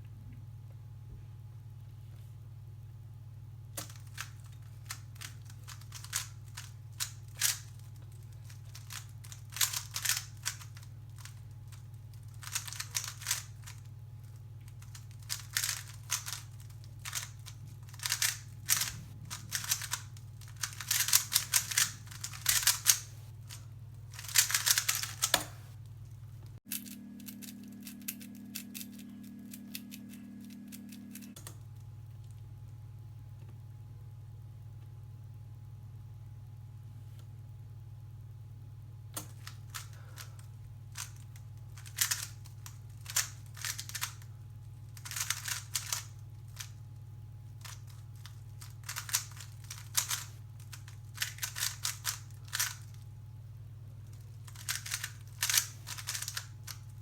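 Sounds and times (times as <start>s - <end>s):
steady low hum: 0.0s - 57.0s
puzzle cube clicking: 8.8s - 10.7s, 14.8s - 17.3s, 17.9s - 23.1s, 24.2s - 25.6s, 41.8s - 42.3s, 48.9s - 50.3s, 51.2s - 52.8s, 54.5s - 56.4s.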